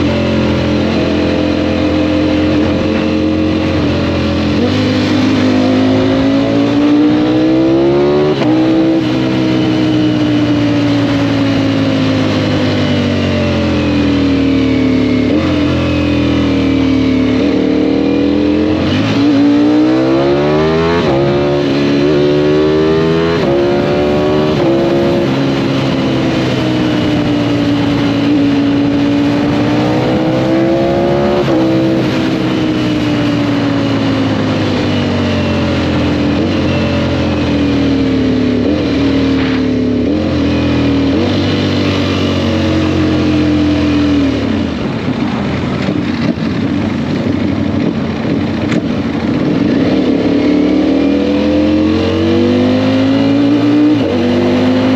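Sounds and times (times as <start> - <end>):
motorcycle engine accelerating: 0.0 - 54.9
wind noise: 15.1 - 54.9.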